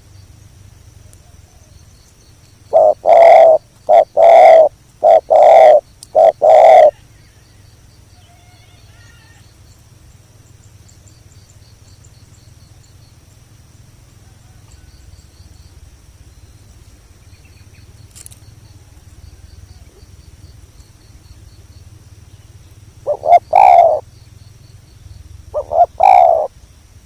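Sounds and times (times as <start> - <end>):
high pulsing insect chirp: 0.0 - 27.0
dove cooing: 2.7 - 7.0, 23.0 - 24.1, 25.5 - 26.5.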